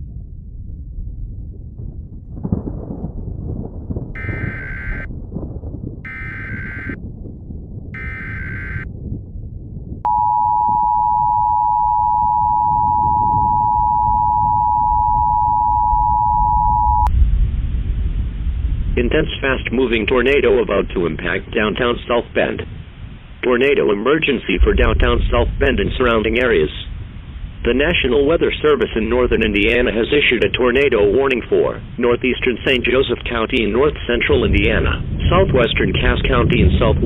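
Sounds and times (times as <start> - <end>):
low rumble: 0.0 - 23.4, 24.5 - 30.9
digital data screeches: 4.2 - 5.1, 6.1 - 7.0, 8.0 - 8.8
two-tone attention signal: 4.2 - 5.1, 6.1 - 7.0, 8.0 - 8.8, 10.1 - 17.1.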